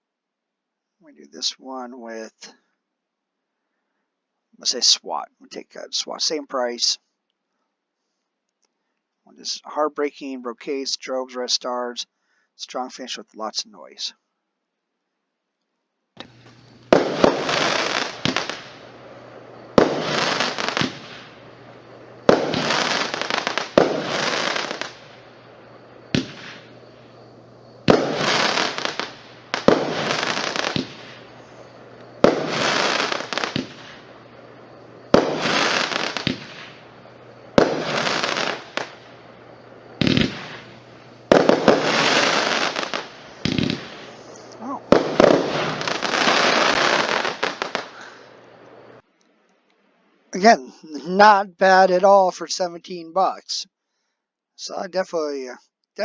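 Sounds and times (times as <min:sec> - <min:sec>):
firework shots banging: 0:16.2 - 0:48.2.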